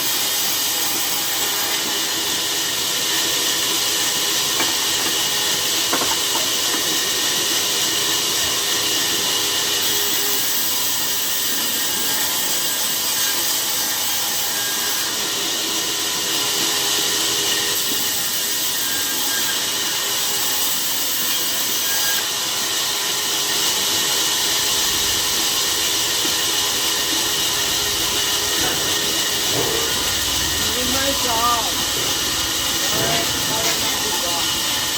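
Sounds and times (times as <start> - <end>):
sawmill saw cutting log: 0.0 - 34.9.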